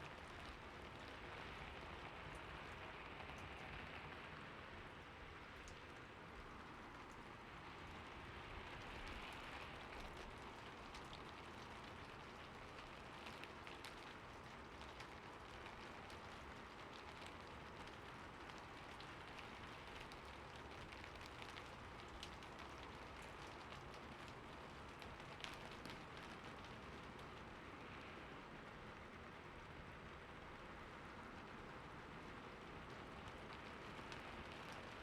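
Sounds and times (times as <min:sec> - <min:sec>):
steady rain: 0:00.0 - 0:35.0
raindrops ticking: 0:08.8 - 0:28.2, 0:31.3 - 0:35.0.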